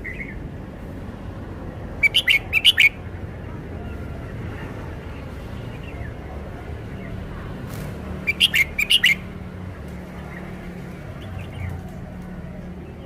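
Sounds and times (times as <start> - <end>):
bird singing sharp notes: 2.0 - 3.0, 8.3 - 9.2.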